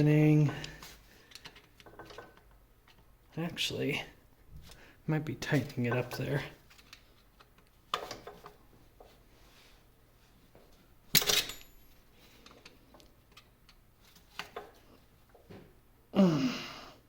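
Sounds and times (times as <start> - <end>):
metal tool clinking and scraping: 5.4 - 7.4.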